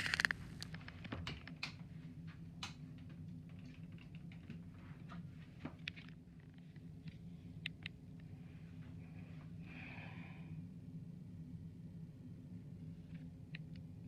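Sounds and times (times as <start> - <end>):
steady low hum: 0.0 - 14.0
light clicks and taps: 0.6 - 8.3.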